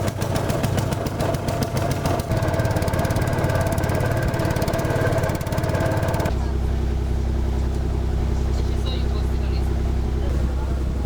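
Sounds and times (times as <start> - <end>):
boat engine running: 0.0 - 11.0
steady whine: 2.3 - 11.0.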